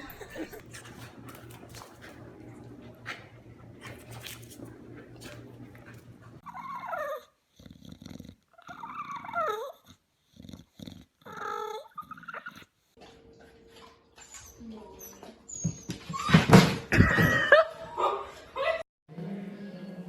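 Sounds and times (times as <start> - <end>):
puppy whining: 0.0 - 1.1, 6.4 - 7.4, 8.6 - 12.7, 14.2 - 16.7.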